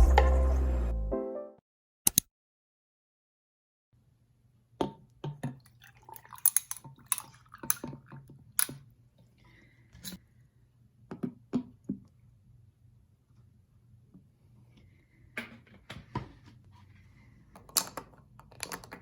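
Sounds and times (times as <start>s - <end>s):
small objects clicking and knocking: 6.4s - 7.9s, 17.6s - 19.0s
low room hum: 8.8s - 19.0s.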